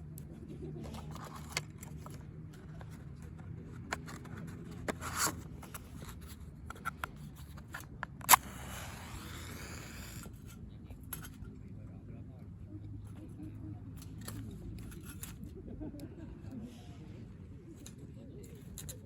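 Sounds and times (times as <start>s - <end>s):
camp gear clicks and scrapes: 0.0s - 11.6s, 14.0s - 15.6s, 17.7s - 19.0s
sharp scrape: 3.0s - 11.5s.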